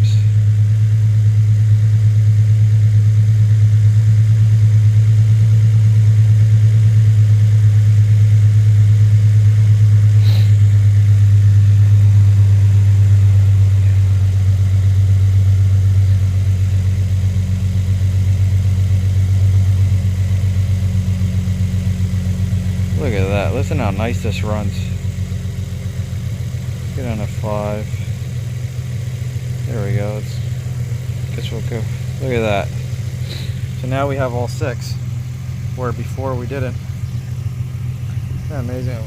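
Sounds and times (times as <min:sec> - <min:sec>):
car engine idling: 0:00.0 - 0:39.0.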